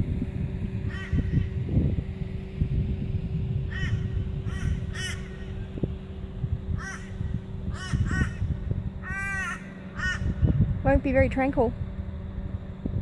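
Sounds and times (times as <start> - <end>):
low rumble: 0.0 - 13.0
crows cawing: 0.9 - 1.5, 3.7 - 5.7, 6.8 - 10.6.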